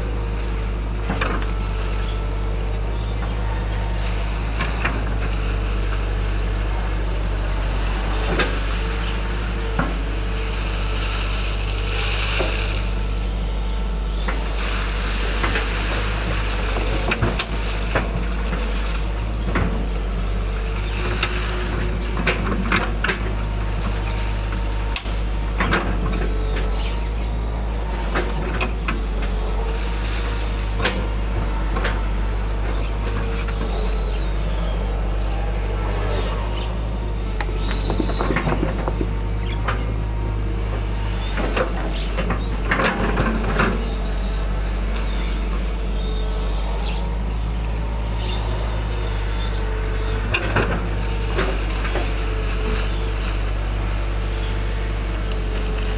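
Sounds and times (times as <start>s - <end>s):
excavator diesel engine running: 0.0s - 55.9s
bucket and arm clanking: 36.4s - 40.1s.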